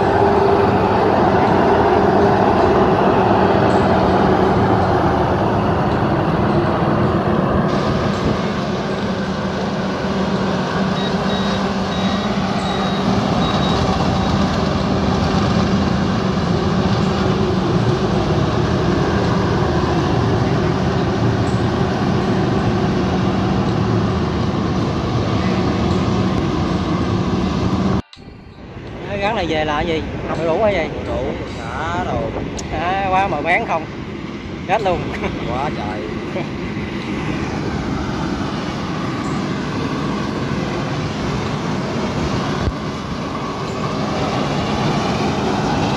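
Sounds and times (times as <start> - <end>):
harvester engine running: 0.0 - 45.9
faint high beeps: 10.9 - 14.5, 28.0 - 28.9.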